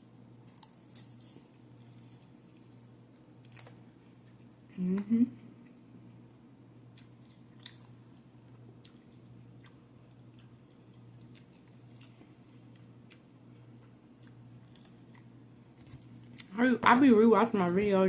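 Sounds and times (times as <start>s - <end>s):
steady low hum: 0.0s - 18.0s
close-up chewing: 6.9s - 16.6s.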